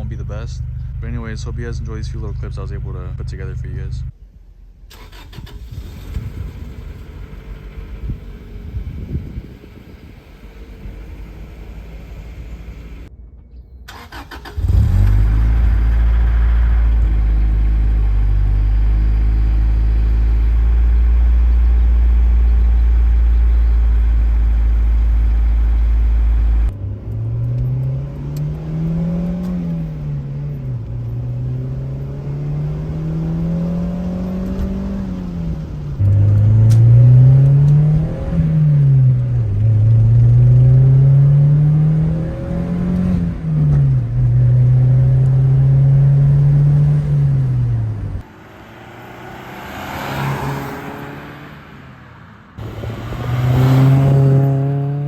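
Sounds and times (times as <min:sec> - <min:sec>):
car engine revving through exhaust: 0:14.6 - 0:55.0.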